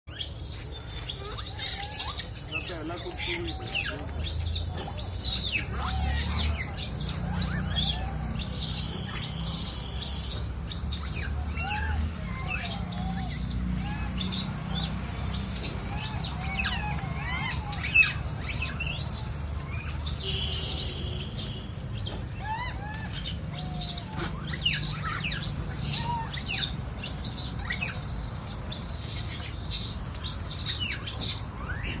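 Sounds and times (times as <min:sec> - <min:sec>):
high-pitched chirping calls: 0:00.0 - 0:32.0.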